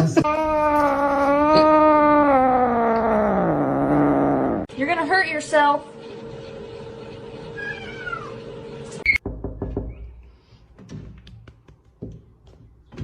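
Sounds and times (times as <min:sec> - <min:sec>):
cat meowing: 0:00.2 - 0:04.7, 0:07.6 - 0:08.4.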